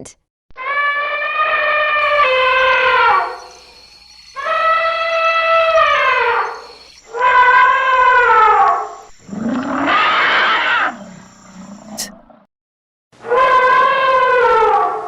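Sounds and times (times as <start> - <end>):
elephant trumpeting: 2.0 - 11.7.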